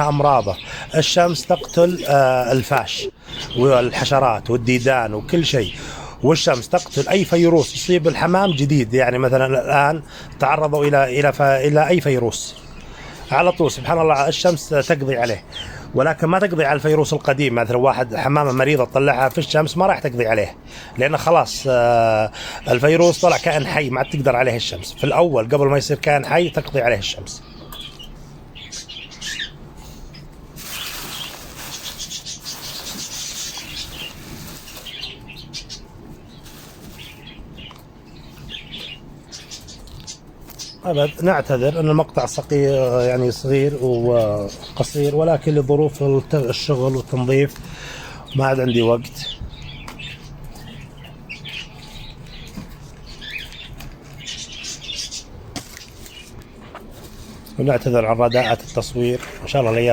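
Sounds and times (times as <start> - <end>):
pigeons chirping: 0.0 - 59.9
high bird chirps: 27.3 - 56.4.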